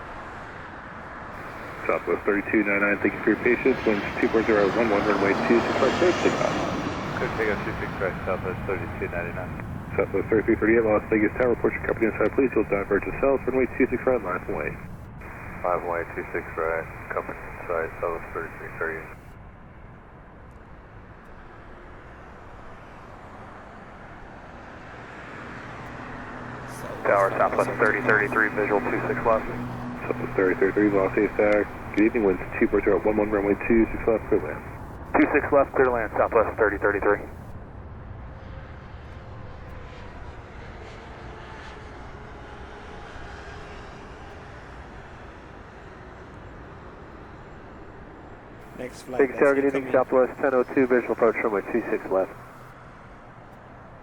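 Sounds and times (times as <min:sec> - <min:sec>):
jet engine rushing: 0:01.4 - 0:19.3, 0:26.7 - 0:37.4, 0:48.7 - 0:52.6.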